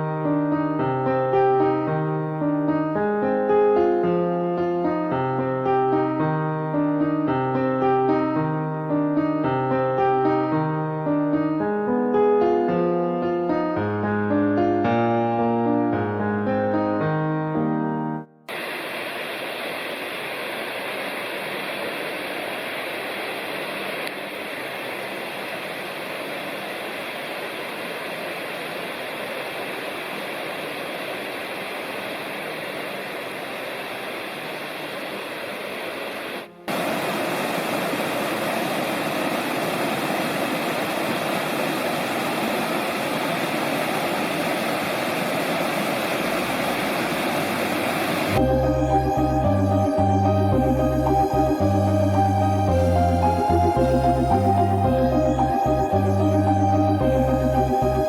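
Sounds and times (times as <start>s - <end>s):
mountain stream rushing: 18.5s - 56.8s.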